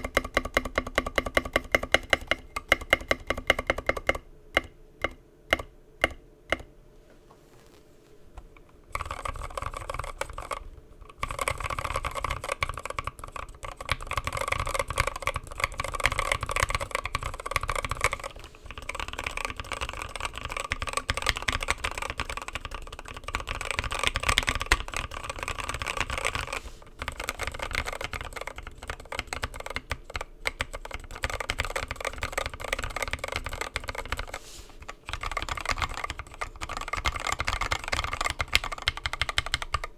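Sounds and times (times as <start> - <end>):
fast typing on mechanical keyboard: 0.0 - 4.2, 8.9 - 39.9.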